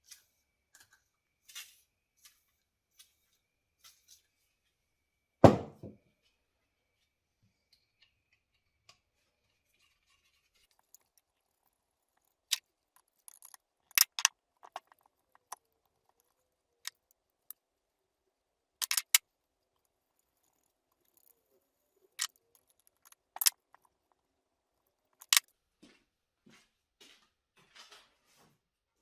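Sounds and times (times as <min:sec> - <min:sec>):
metal tools clicking and clinking: 0:12.2 - 0:17.0, 0:18.8 - 0:19.2, 0:22.1 - 0:23.9.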